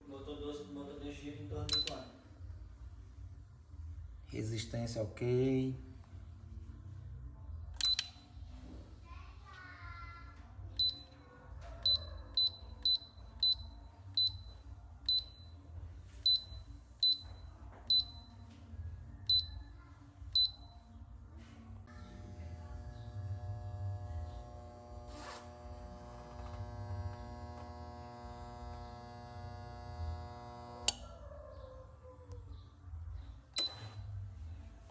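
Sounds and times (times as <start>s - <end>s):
control panel beeps: 1.7s - 2.1s, 7.8s - 8.2s, 10.8s - 11.1s, 11.8s - 15.6s, 16.2s - 18.3s, 19.3s - 19.6s, 33.6s - 34.0s
electric motor humming and whining: 21.9s - 31.0s.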